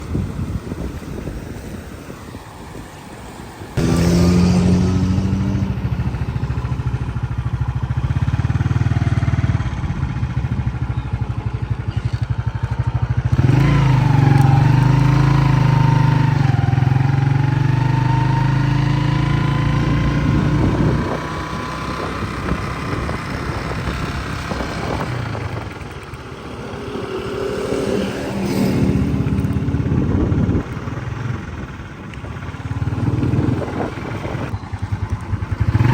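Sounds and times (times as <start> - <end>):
high gliding tone: 25.4 - 31.4.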